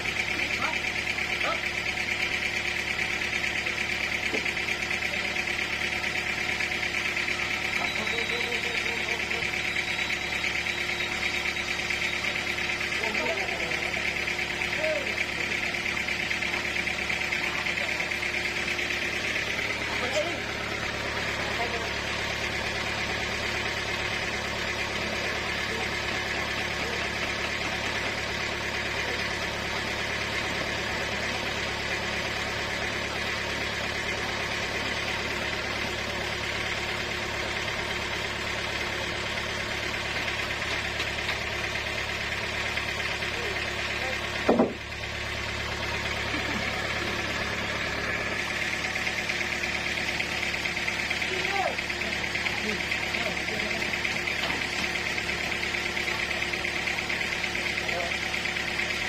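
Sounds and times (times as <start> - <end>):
sawmill machinery humming: 0.0 - 59.0
loud knock: 44.4 - 44.8.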